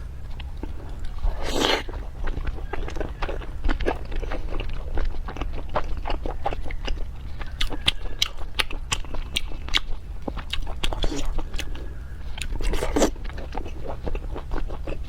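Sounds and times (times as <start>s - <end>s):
person chewing food: 0.0s - 15.0s
wet mouth clicks and crunches: 12.4s - 15.0s.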